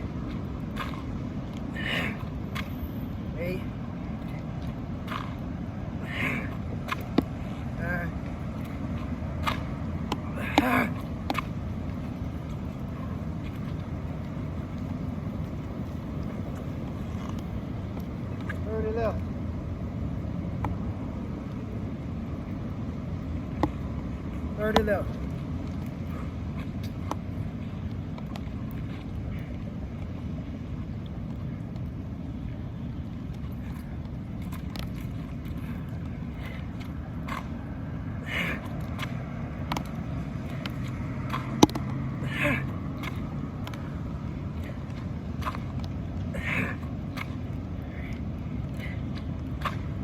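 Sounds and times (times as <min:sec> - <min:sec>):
low outdoor rumble: 0:00.0 - 0:50.0
man grunting: 0:10.3 - 0:11.0, 0:42.2 - 0:42.7.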